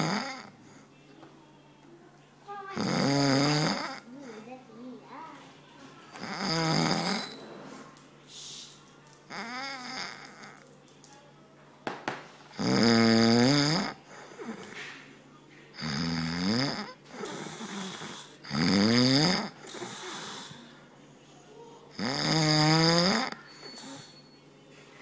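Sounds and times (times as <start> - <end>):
man snoring: 0.0 - 0.5, 2.8 - 4.1, 6.2 - 7.3, 9.3 - 10.6, 12.6 - 14.6, 15.8 - 20.6, 22.0 - 24.0
short hissing breath: 8.3 - 8.8.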